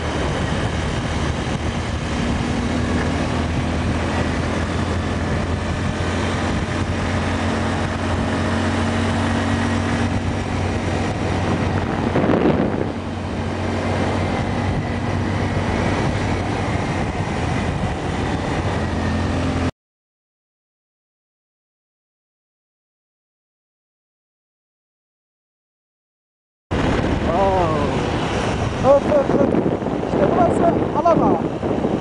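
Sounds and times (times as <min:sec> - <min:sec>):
motorcycle engine running: 0:00.0 - 0:19.7.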